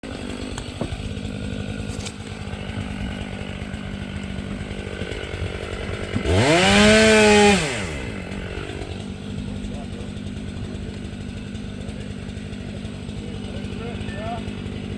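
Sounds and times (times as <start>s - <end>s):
chainsaw idling and revving: 0.0s - 14.9s.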